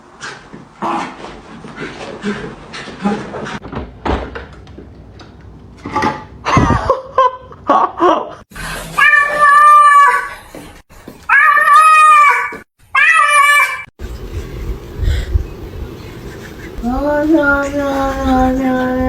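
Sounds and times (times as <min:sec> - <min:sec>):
cat yowling: 0:08.9 - 0:10.4, 0:11.3 - 0:13.9.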